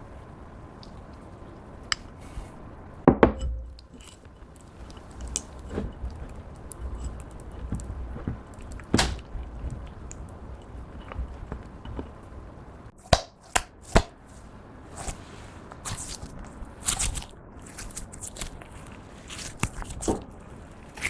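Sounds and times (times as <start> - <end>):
slime squelching: 0.0 - 13.0.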